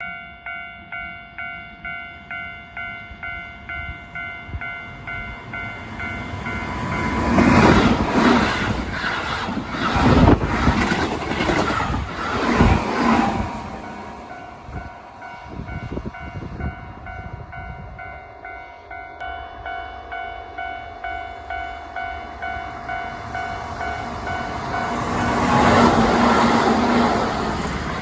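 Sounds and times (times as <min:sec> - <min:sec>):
level crossing warning bell: 0:00.0 - 0:07.8, 0:13.6 - 0:26.0
train wheels clacking over rails: 0:05.8 - 0:14.4.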